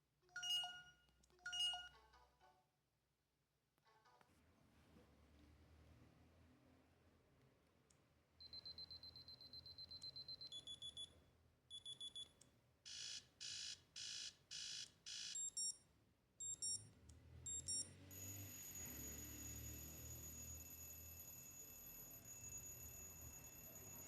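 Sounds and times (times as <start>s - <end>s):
phone electronic alert tones: 0.4s - 2.0s, 12.9s - 15.8s, 16.4s - 16.8s, 17.5s - 24.0s.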